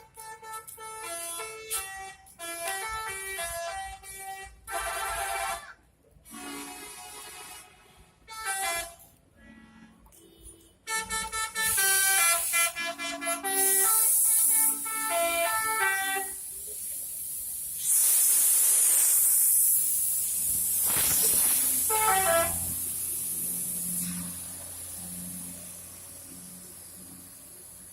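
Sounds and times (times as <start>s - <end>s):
musical air horn melody: 0.0s - 16.4s, 21.8s - 22.9s
bus engine running: 10.3s - 17.6s, 19.8s - 27.9s
air hissing: 11.5s - 27.9s.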